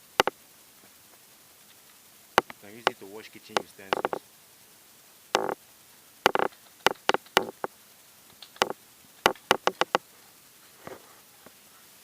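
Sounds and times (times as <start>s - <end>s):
sharp clicks and knocks: 0.2s - 0.4s, 2.4s - 4.2s, 5.4s - 5.6s, 6.2s - 7.7s, 8.3s - 10.0s.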